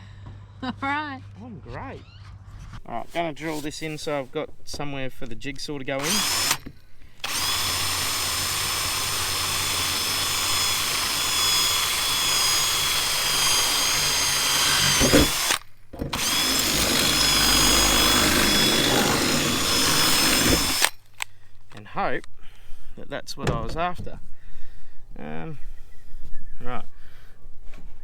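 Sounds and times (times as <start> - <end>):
power drill drilling metal: 2.9 - 21.3.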